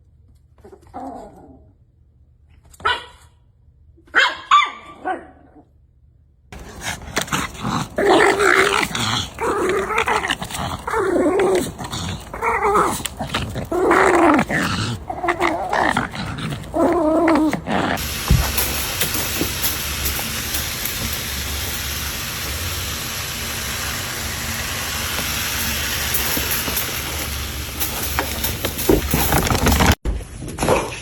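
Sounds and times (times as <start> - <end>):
dog barking: 2.8 - 3.3, 4.1 - 5.6
dog growling barks: 6.6 - 30.0.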